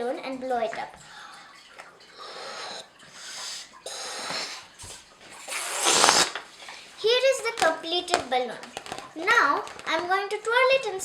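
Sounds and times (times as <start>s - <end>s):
breathy puffs into balloon: 2.2s - 7.0s.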